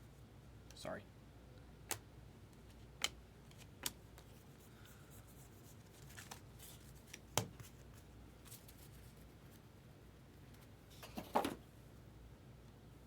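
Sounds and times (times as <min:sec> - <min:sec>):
cards rustling: 0:05.6 - 0:09.2.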